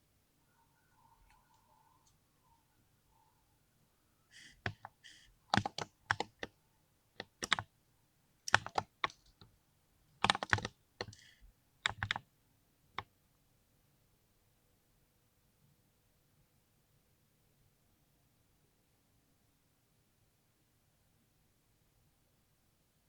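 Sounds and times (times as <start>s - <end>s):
mechanical keyboard typing clacks: 4.6s - 6.5s, 7.2s - 7.7s, 8.5s - 9.4s, 10.2s - 11.3s, 11.9s - 12.2s.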